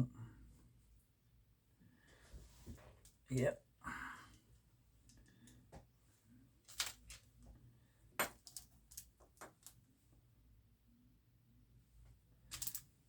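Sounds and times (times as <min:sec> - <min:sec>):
small metal parts clicking: 0:08.3 - 0:09.7, 0:12.5 - 0:12.9.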